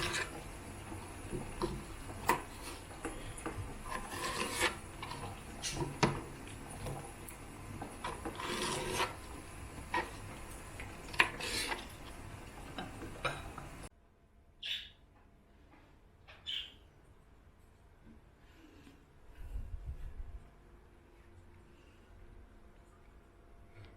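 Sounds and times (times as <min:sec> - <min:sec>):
rubbing and scraping: 0:00.0 - 0:00.5, 0:01.7 - 0:06.1, 0:07.8 - 0:10.3, 0:11.0 - 0:12.0.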